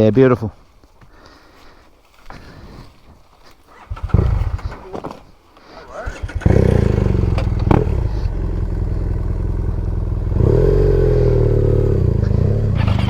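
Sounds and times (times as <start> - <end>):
motorcycle engine idling and revving: 3.7 - 13.0.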